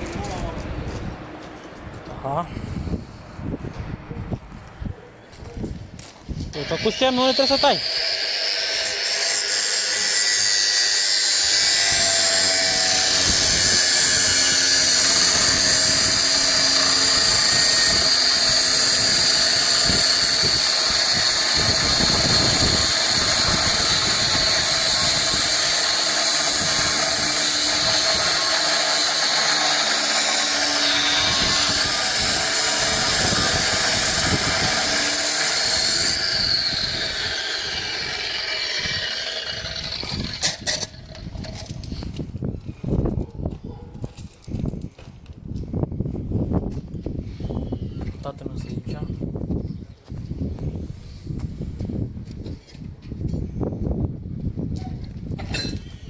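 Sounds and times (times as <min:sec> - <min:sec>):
angle grinder cutting steel: 0:06.6 - 0:42.1.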